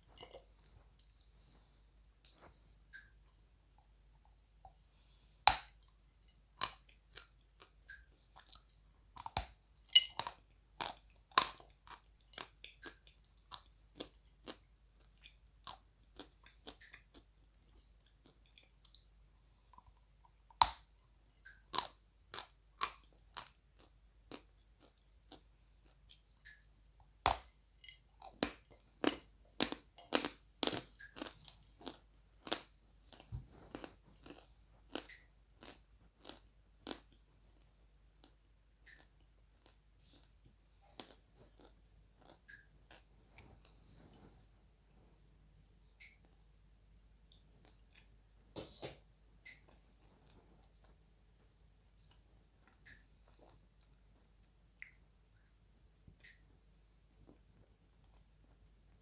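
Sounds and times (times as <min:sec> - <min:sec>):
dry crunching chewing: 0:06.6 - 0:19.1, 0:27.3 - 0:37.6, 0:38.2 - 0:44.4
chewing crunchy clay: 0:27.3 - 0:37.2.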